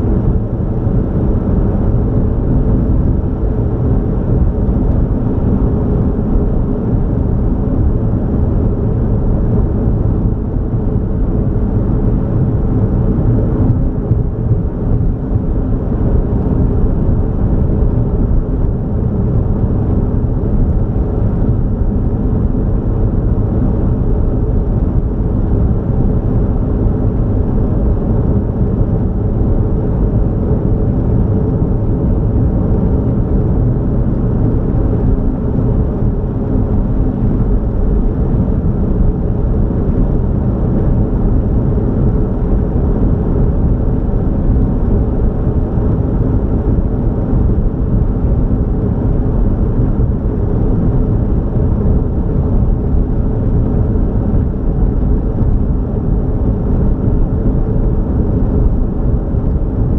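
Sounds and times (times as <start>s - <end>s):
vehicle road rumble: 0.0s - 59.9s.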